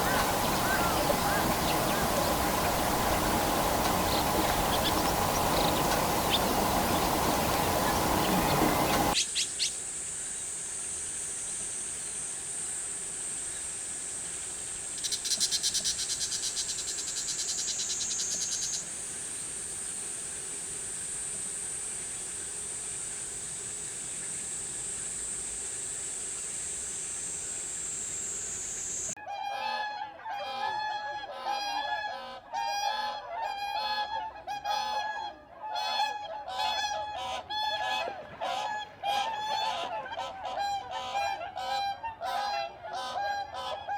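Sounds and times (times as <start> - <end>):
geese honking: 0.0 - 9.2, 29.4 - 43.9
rapid buzzing rattle: 0.0 - 9.2
steady high-pitched hiss: 0.0 - 29.2.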